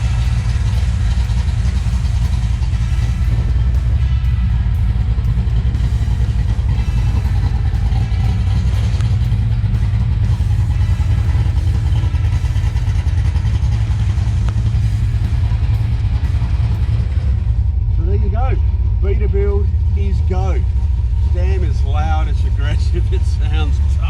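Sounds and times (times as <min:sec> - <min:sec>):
car engine with loud exhaust: 0:00.0 - 0:24.0.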